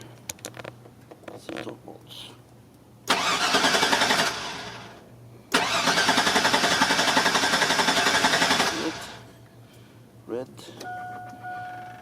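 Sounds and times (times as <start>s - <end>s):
engine cranking without starting: 3.1s - 4.9s, 5.5s - 9.2s.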